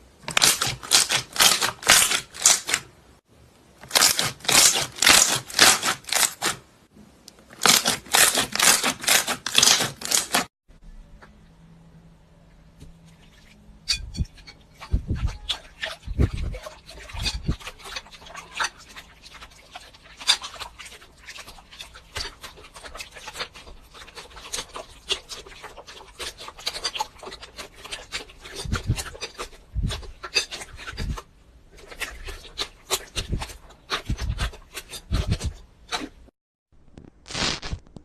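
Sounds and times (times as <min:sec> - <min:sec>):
crunchy slime crackling and popping: 0:03.8 - 0:06.6, 0:07.5 - 0:10.5, 0:36.8 - 0:38.0.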